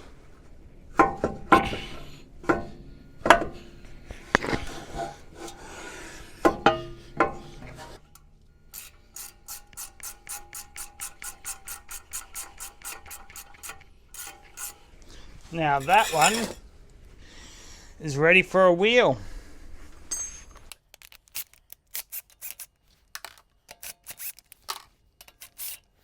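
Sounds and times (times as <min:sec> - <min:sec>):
ratchet wrench clicking: 0:08.7 - 0:14.9, 0:21.0 - 0:25.9
metal knocks and clanks: 0:15.8 - 0:16.6.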